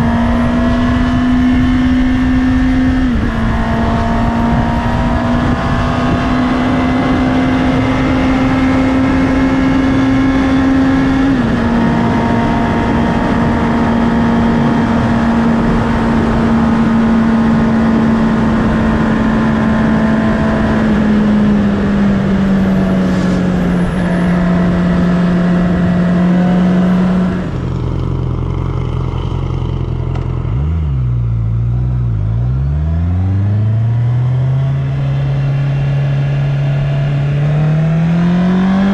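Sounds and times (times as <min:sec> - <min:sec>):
wind noise: 0:00.0 - 0:28.1
motorcycle engine running: 0:00.0 - 0:38.9.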